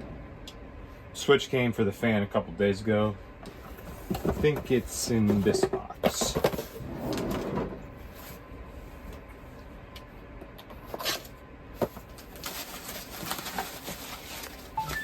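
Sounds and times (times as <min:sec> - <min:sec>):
packaging rustling: 0:11.9 - 0:15.0.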